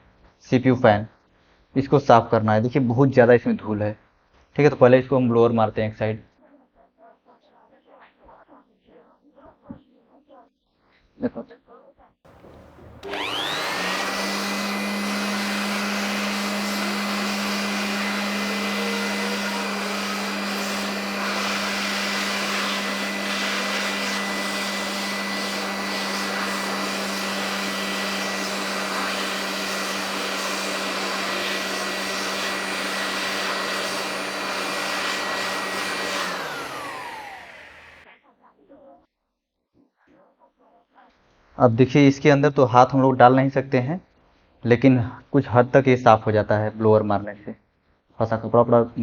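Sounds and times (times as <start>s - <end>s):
electric air blower running: 12.3s - 38.0s.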